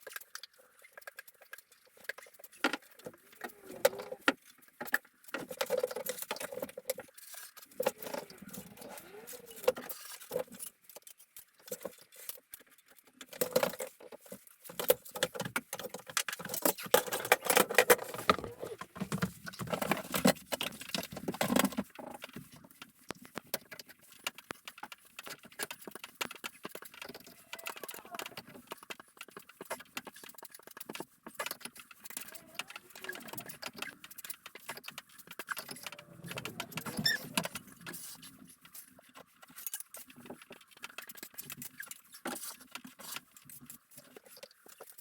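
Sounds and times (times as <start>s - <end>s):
filling knife scraping wall: 17.7s - 19.1s.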